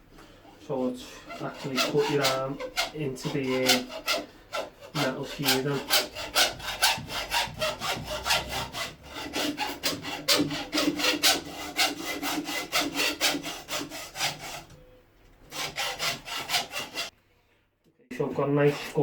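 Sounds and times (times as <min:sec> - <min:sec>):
saw scoring metal cable: 0:00.4 - 0:14.8, 0:15.5 - 0:17.1.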